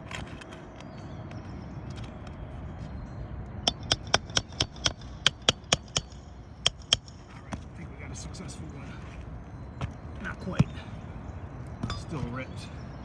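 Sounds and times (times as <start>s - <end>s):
hammer striking metal: 3.7s - 7.3s.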